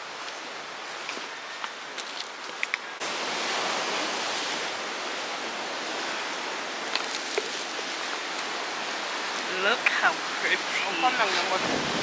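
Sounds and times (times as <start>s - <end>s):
surf rushing: 3.0s - 12.0s.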